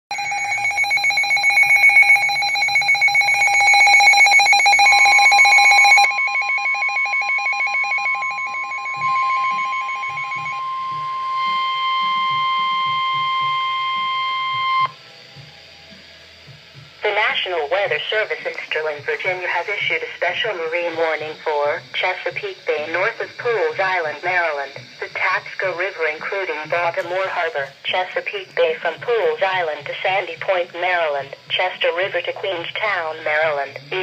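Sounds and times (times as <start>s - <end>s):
steady high tone: 0.1s - 15.0s, 17.0s - 34.0s
pulsing electronic alarm tones: 0.1s - 15.5s.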